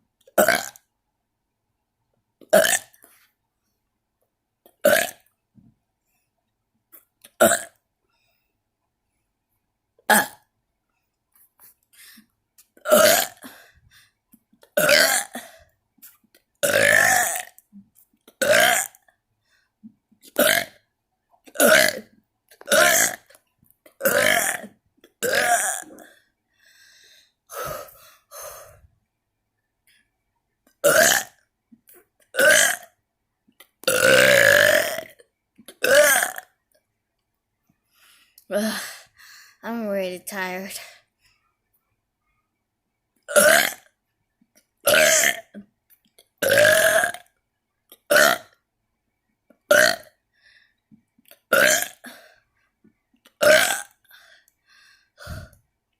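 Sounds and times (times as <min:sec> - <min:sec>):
person burping: 0:00.3 - 0:00.8, 0:02.4 - 0:03.0, 0:04.8 - 0:05.3, 0:07.3 - 0:07.8, 0:10.0 - 0:10.5, 0:12.8 - 0:13.6, 0:14.7 - 0:15.6, 0:16.6 - 0:17.7, 0:18.3 - 0:19.0, 0:20.3 - 0:20.8, 0:21.5 - 0:23.4, 0:24.0 - 0:26.2, 0:30.8 - 0:31.4, 0:32.3 - 0:33.0, 0:33.8 - 0:36.6, 0:43.3 - 0:43.9, 0:44.8 - 0:45.7, 0:46.4 - 0:47.3, 0:48.0 - 0:48.6, 0:49.7 - 0:50.1, 0:51.4 - 0:52.2, 0:53.4 - 0:54.0, 0:55.2 - 0:55.6.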